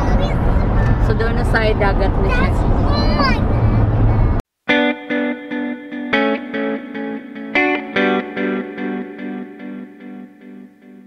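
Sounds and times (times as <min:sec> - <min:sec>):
steady rumble: 0:00.0 - 0:04.4
effects-heavy plucked guitar music: 0:04.7 - 0:11.0.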